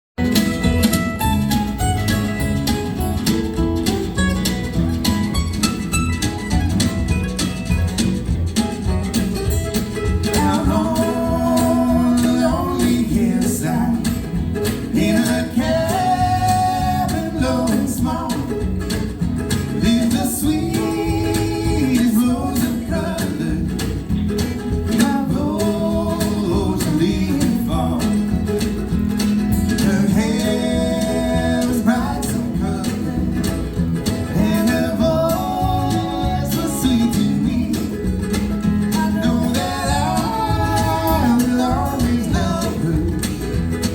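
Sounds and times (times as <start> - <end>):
live band playing country song: 0.2 - 43.9
person singing: 10.3 - 14.1, 14.9 - 18.7, 29.8 - 33.4, 34.3 - 38.2, 38.9 - 43.5.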